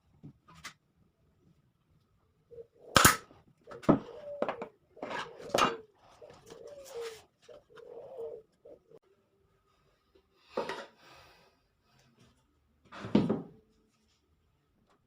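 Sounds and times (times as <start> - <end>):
dove cooing: 2.4 - 9.0.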